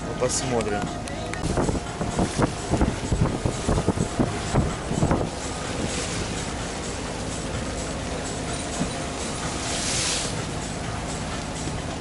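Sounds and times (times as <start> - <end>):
sea rushing: 0.0 - 12.0
wind buffeting microphone: 0.8 - 7.1.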